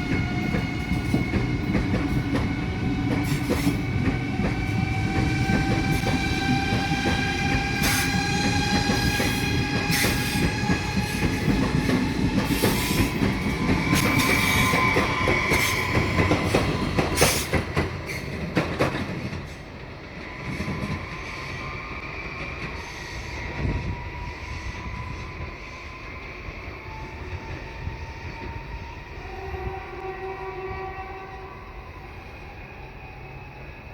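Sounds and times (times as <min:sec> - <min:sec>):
train wheels clacking on rails: 0:00.0 - 0:28.6
train rumble: 0:00.0 - 0:31.9
high squealing wheel tones: 0:12.5 - 0:17.4.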